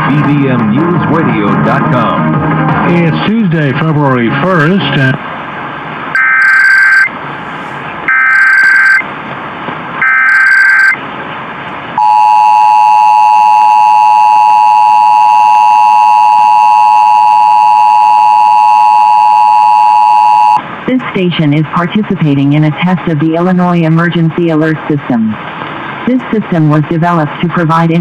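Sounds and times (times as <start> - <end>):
two-tone attention signal: 6.2 - 7.1, 8.1 - 9.0, 10.0 - 11.0, 12.0 - 20.6
warbling data bursts: 6.2 - 7.2, 8.1 - 9.0, 10.0 - 11.0
radio hiss: 6.2 - 9.0.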